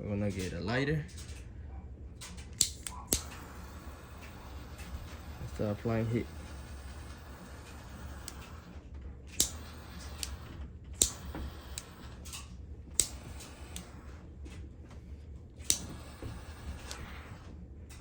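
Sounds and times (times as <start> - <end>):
lighter clicking: 2.6 - 8.7, 9.3 - 14.2, 15.6 - 17.4.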